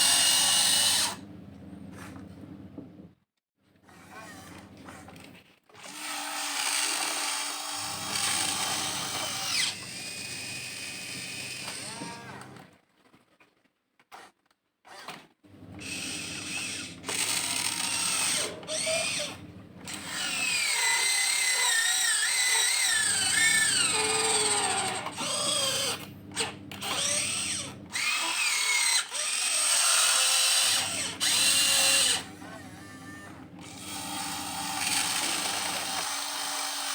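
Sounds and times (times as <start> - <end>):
toy excavator motors whining: 0.0 - 1.2, 5.8 - 12.6, 15.8 - 36.9.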